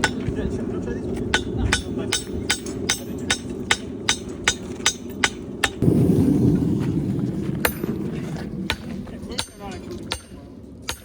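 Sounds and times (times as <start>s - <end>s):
steady low rush: 5.5s - 10.8s.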